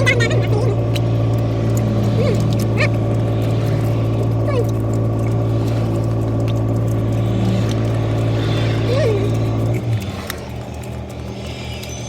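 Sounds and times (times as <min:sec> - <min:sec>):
low mechanical hum: 0:00.0 - 0:12.0
faint chirps: 0:11.1 - 0:12.0.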